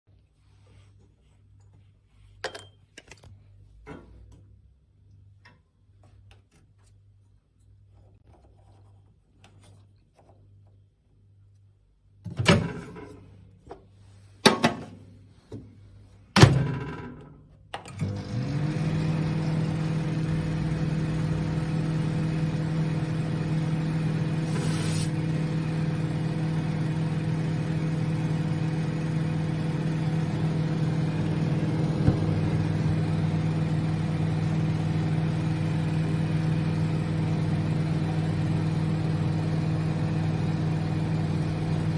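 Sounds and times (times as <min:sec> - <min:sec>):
microwave oven humming: 0:17.9 - 0:41.9.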